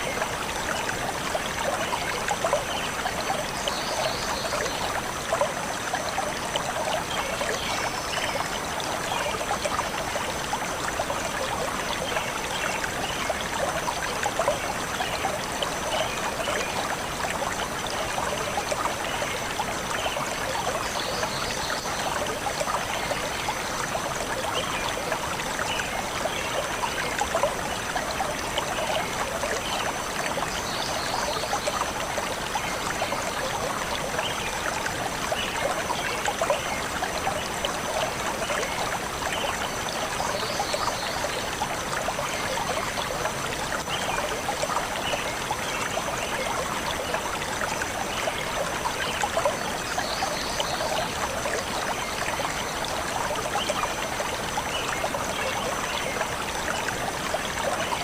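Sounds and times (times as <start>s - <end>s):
stream burbling over stones: 0.0s - 58.0s.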